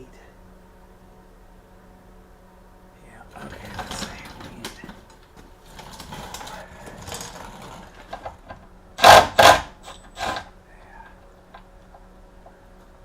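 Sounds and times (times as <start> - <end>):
power tool rasping bursts: 5.7 - 12.0.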